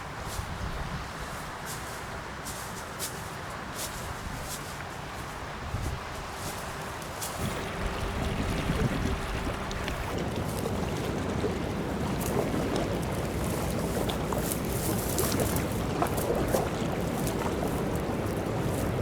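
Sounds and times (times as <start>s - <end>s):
small water splashes: 6.4s - 19.0s
river water rushing: 6.6s - 19.0s.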